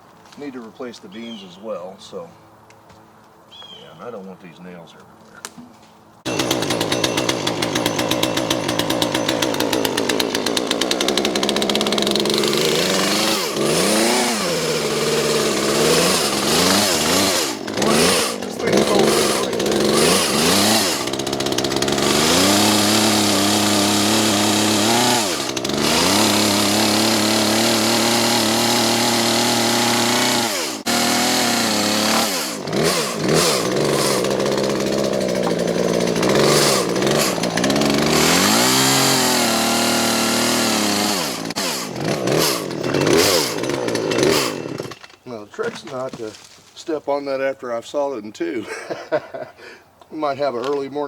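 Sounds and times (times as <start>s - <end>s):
chainsaw cutting logs: 6.2s - 46.8s.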